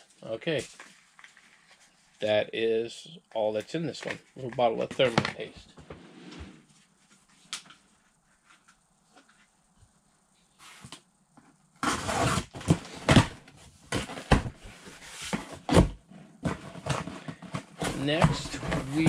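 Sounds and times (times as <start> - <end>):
packaging rustling and thumping: 11.8 - 19.0.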